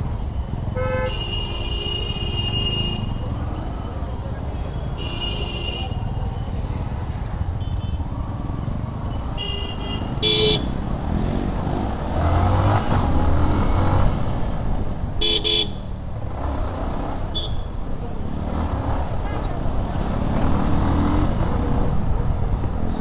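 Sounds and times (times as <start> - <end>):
motorcycle engine and road rumble: 0.0 - 23.0
vehicle horn honks: 0.8 - 3.1, 9.4 - 10.7, 15.2 - 15.8.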